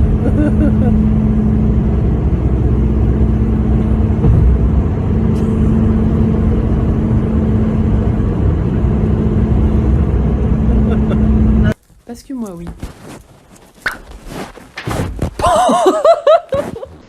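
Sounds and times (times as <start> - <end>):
car driving rumble inside cabin: 0.0 - 11.8
constant low hum: 0.0 - 16.8.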